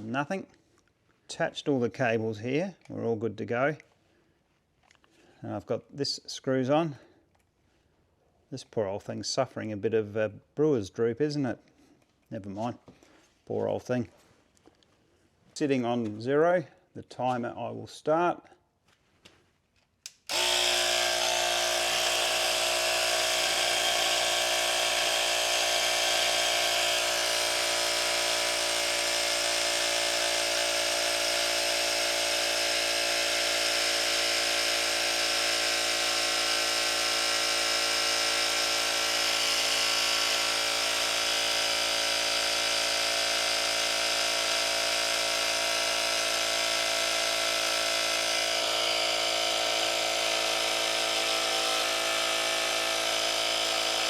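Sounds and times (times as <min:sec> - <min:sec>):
tyre compressor buzzing: 0:20.1 - 0:54.0.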